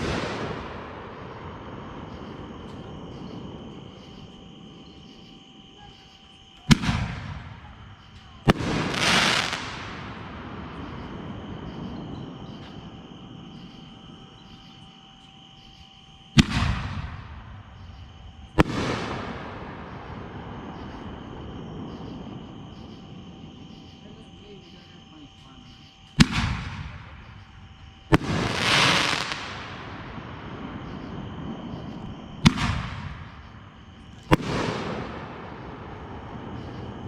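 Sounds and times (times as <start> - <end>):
fireworks hissing crackle: 0.0 - 3.6, 6.6 - 13.0, 26.1 - 37.0
fireworks bangs echoing: 0.0 - 4.3, 6.6 - 13.8, 16.4 - 23.1, 26.1 - 37.0
insects chirring: 0.0 - 37.0.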